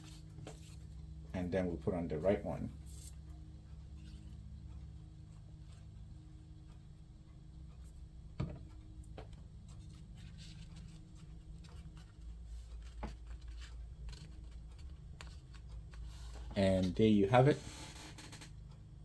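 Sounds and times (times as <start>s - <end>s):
steady low hum: 0.0s - 19.0s
paper rustling and tapping: 8.4s - 17.0s.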